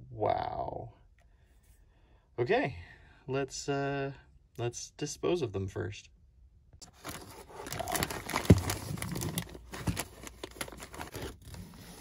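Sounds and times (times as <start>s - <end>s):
wrapping material crinkling: 6.9s - 12.0s.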